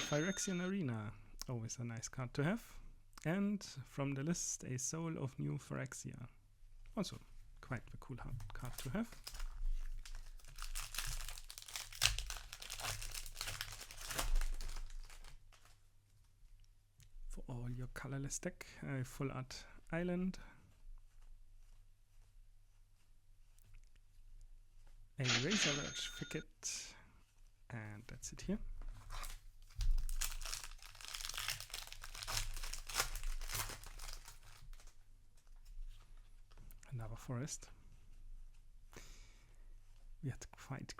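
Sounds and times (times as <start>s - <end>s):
foil wrapper tearing and crinkling: 8.7s - 15.8s, 29.2s - 35.0s.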